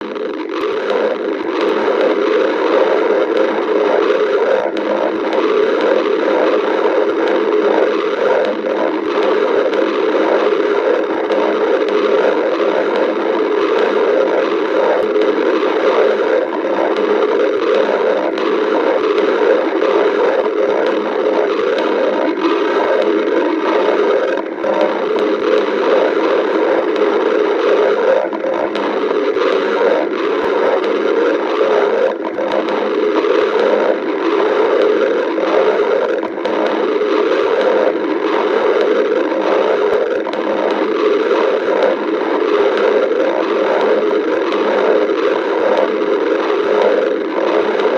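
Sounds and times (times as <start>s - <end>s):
stomach growling: 0.0s - 47.9s.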